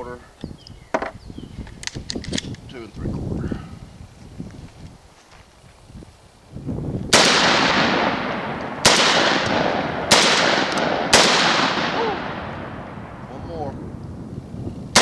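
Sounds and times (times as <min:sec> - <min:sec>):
shotgun shots echoing: 0:07.1 - 0:13.3.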